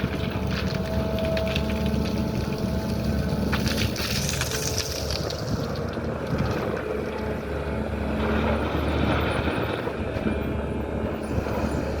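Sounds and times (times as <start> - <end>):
excavator diesel engine running: 0.0 - 12.0.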